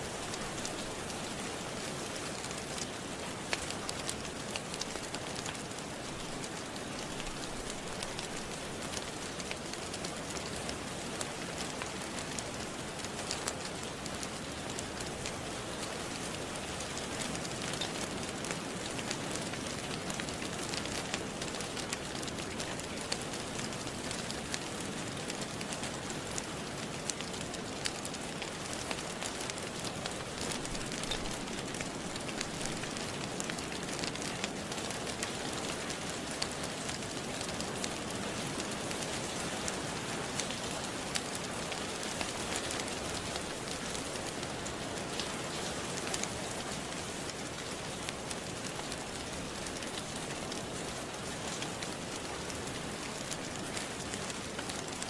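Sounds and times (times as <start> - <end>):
steady rain: 0.0 - 55.0
wood fire crackling: 0.0 - 55.0.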